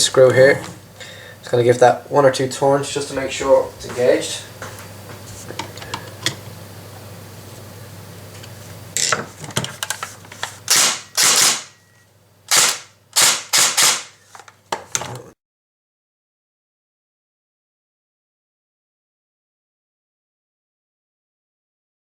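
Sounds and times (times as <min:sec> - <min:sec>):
airsoft gun firing bursts: 0:10.7 - 0:11.7, 0:12.5 - 0:14.1.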